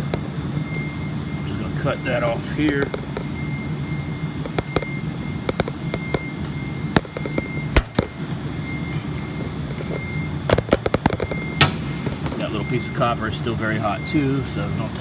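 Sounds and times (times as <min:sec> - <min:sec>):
steady background hum: 0:00.0 - 0:15.0
hand cutters snapping copper: 0:07.0 - 0:08.2.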